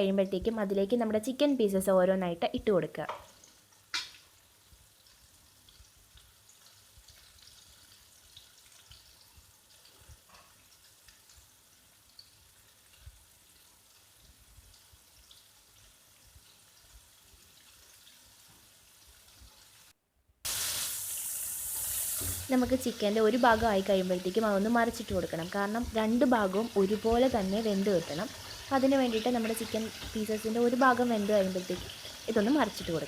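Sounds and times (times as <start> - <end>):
oil popping and crackling: 3.1 - 19.8
chicken sizzling in oil: 3.2 - 33.0.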